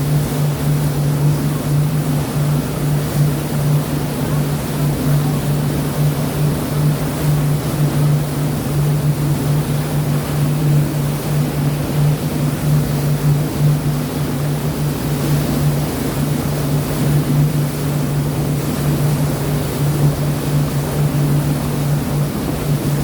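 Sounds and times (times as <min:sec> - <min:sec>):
boat engine drone: 0:00.0 - 0:23.0
wind: 0:00.0 - 0:23.0.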